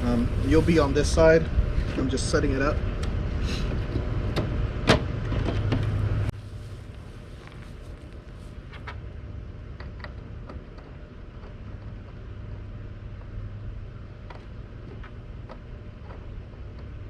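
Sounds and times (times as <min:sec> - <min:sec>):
low hum: 0:00.0 - 0:17.0
plumbing parts clicking and tapping: 0:09.7 - 0:12.2, 0:14.2 - 0:17.0.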